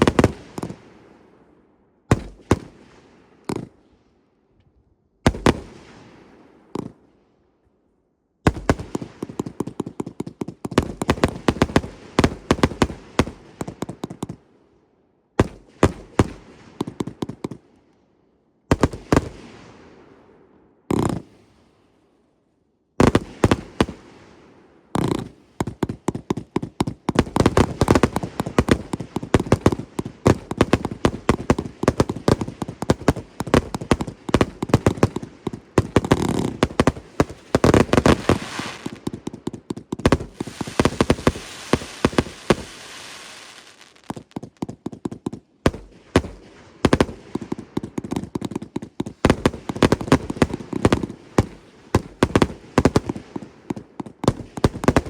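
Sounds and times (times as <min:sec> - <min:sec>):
firework cakes firing: 0:25.0 - 0:55.0
firework crackle and hiss: 0:27.6 - 0:44.5.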